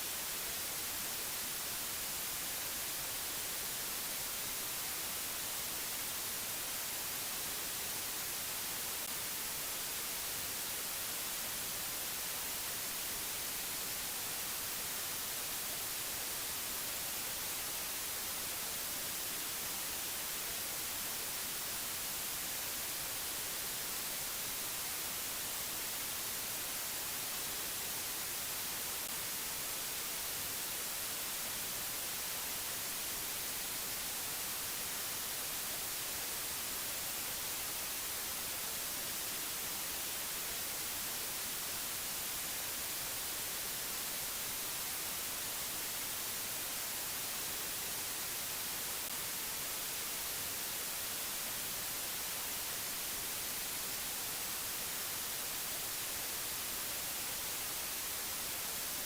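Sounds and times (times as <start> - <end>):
white noise hiss: 0.0 - 59.0.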